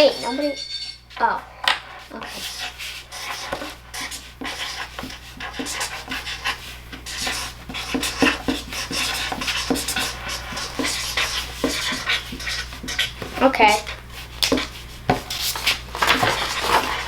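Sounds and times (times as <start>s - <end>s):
glass breaking: 0.3s - 1.0s.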